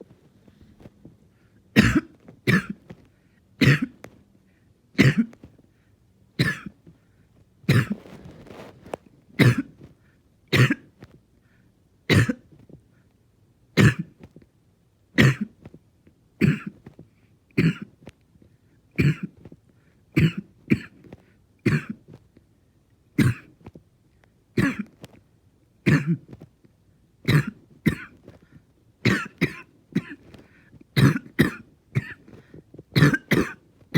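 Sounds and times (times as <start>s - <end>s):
person coughing harshly: 1.8s - 2.8s, 3.6s - 4.0s, 5.0s - 5.4s, 6.4s - 6.8s, 7.7s - 8.2s, 9.4s - 9.8s, 10.5s - 11.0s, 12.1s - 12.5s, 13.8s - 14.2s, 15.2s - 15.6s, 16.4s - 16.8s, 17.6s - 17.9s, 19.0s - 19.4s, 20.2s - 21.0s, 21.6s - 22.1s, 23.2s - 23.6s, 24.6s - 25.0s, 25.8s - 26.3s, 27.3s - 28.3s, 29.0s - 30.4s, 31.0s - 32.4s, 33.0s - 33.6s.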